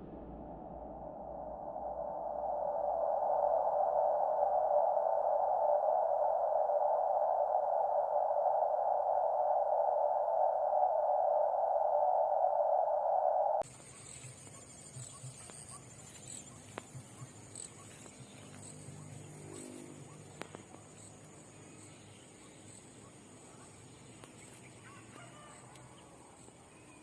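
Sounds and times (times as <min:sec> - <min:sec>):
loud droning tone: 0:00.0 - 0:13.6
high-pitched whine: 0:00.0 - 0:25.7
faint distant animal call: 0:13.7 - 0:27.0.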